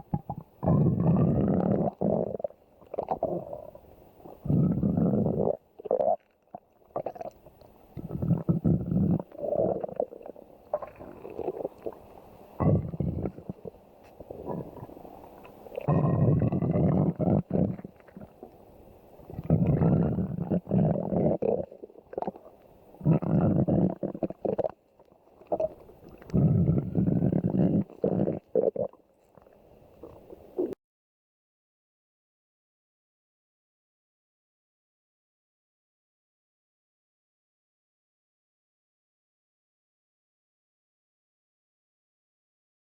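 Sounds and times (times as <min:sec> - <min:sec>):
stomach growling and gurgling: 0:00.0 - 0:30.8.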